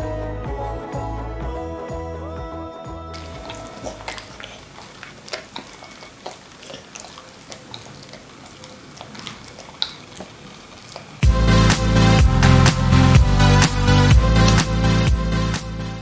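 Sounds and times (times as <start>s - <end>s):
dog chewing food: 3.2s - 15.2s.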